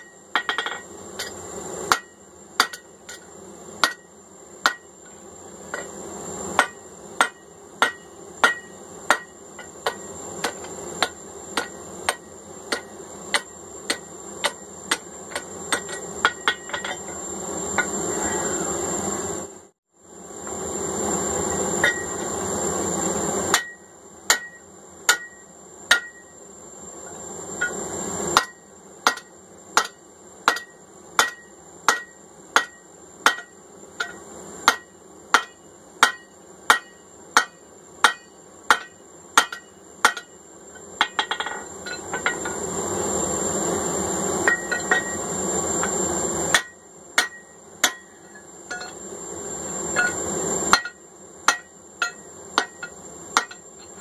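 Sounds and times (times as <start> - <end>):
hammer clanging on anvil: 0.0 - 3.2, 6.6 - 17.2, 23.6 - 26.2, 28.4 - 40.4, 46.5 - 49.0, 50.0 - 54.0.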